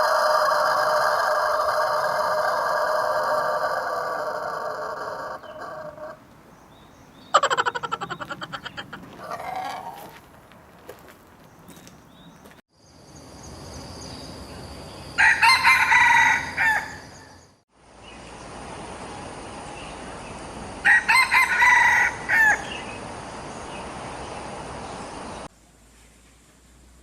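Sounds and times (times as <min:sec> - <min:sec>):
rooster crowing: 0:00.0 - 0:06.2, 0:07.4 - 0:10.1, 0:15.2 - 0:17.4, 0:20.8 - 0:22.8
steady background hiss: 0:12.8 - 0:27.0.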